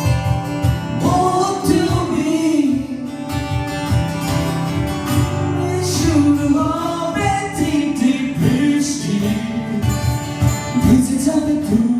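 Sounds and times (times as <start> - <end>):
strummed acoustic guitar: 0.0 - 11.9
person singing: 1.0 - 3.2, 5.3 - 10.1.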